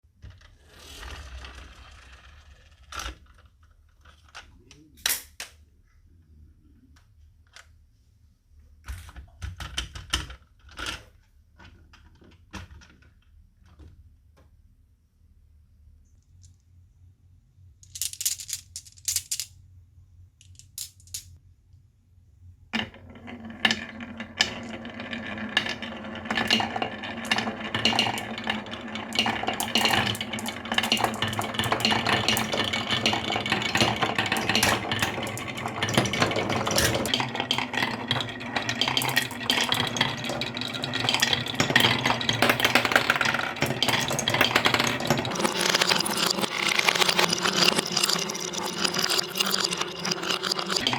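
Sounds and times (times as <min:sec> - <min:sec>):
marbles rattling down a marble run: 0:00.8 - 0:03.2, 0:22.8 - 0:50.9.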